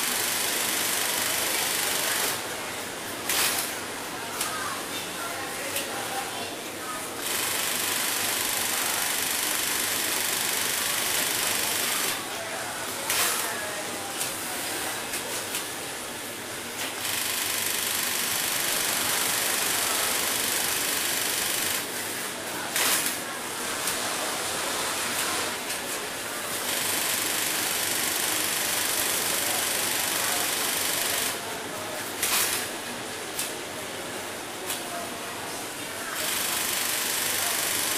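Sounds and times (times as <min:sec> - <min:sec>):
industrial sewing machine running: 0:00.0 - 0:02.4, 0:07.2 - 0:12.2, 0:16.8 - 0:22.0, 0:26.4 - 0:31.5, 0:36.1 - 0:37.9.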